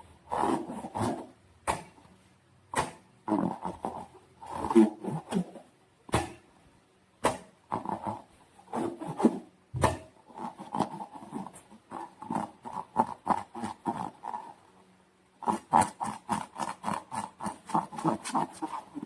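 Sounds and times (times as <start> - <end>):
slime squelching: 15.4 - 19.0.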